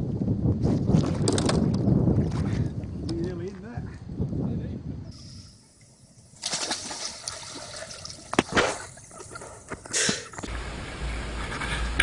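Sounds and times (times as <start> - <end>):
water splashing: 5.3 - 9.8.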